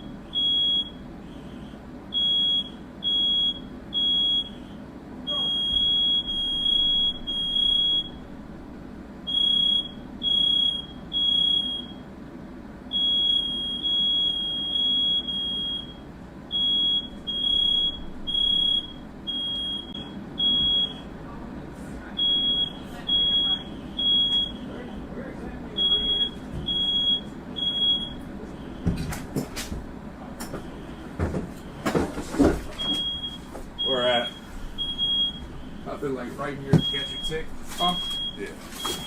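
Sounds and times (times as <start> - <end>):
smoke alarm beeping: 0.0 - 1.0, 2.1 - 4.7, 5.3 - 8.2, 9.3 - 12.0, 12.9 - 21.1, 22.2 - 24.7, 25.8 - 29.0, 32.7 - 39.0.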